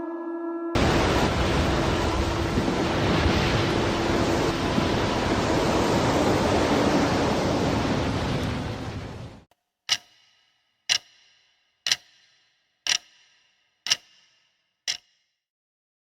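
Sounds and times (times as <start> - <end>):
ocean wave crashing: 0.8 - 9.5.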